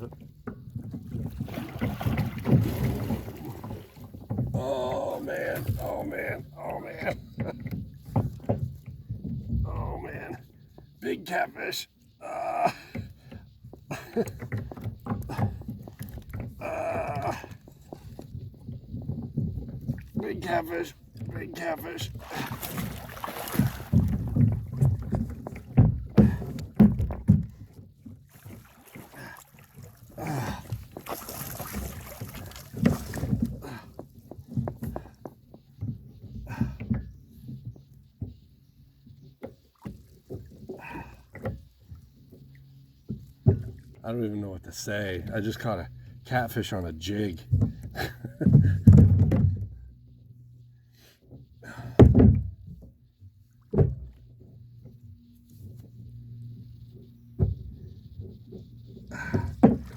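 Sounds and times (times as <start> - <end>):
knocks and thumps in a boat: 0.0 - 59.9
small knocks: 47.4 - 49.9.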